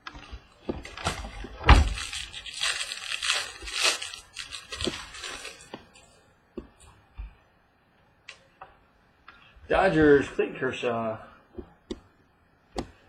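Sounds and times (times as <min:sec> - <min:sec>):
packaging rustling and crinkling: 0:00.0 - 0:06.2.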